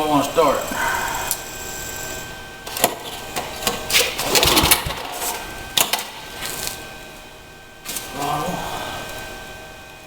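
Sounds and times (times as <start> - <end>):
engine turning over: 4.2 - 5.0
engine cranking clicks and rattles: 4.2 - 5.1.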